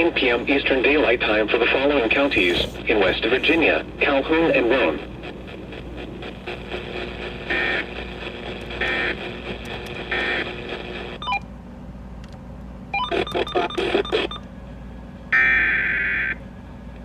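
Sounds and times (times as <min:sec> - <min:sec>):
radio static: 0:00.0 - 0:11.2.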